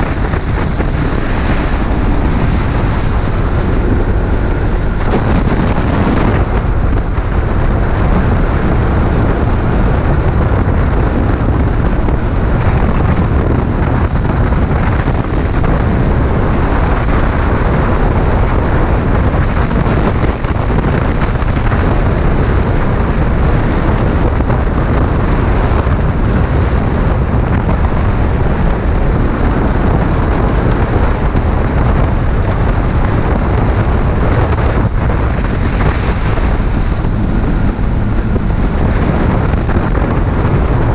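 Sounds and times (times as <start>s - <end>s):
motorcycle engine: 0.0s - 40.9s
wind buffeting microphone: 0.0s - 40.9s.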